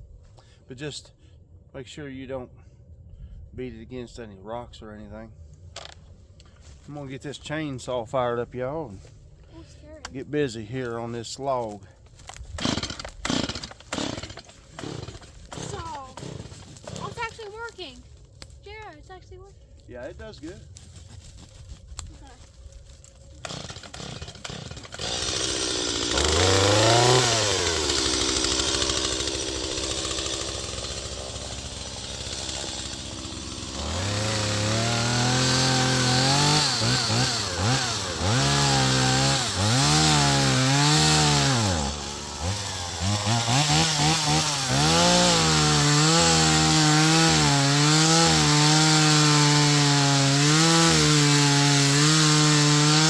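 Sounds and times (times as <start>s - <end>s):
chainsaw revving and cutting: 12.6s - 17.8s, 23.4s - 53.0s.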